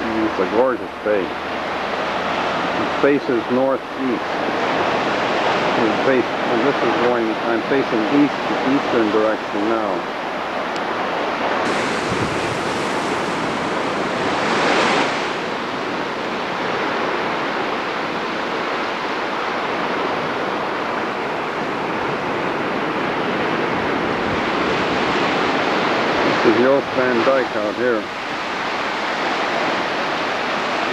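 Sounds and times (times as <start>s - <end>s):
surf washing onto beach: 0.0s - 30.9s
wind on microphone: 0.0s - 30.9s.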